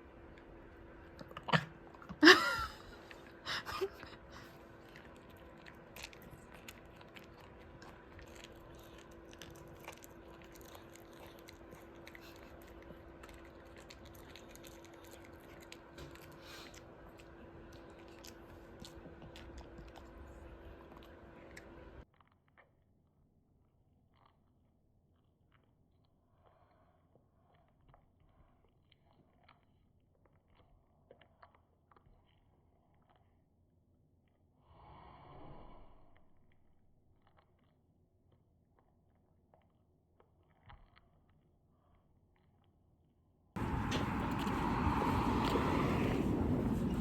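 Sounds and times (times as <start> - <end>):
dog chewing a treat: 0.0 - 22.8, 24.0 - 33.6, 37.1 - 41.7, 43.6 - 47.0.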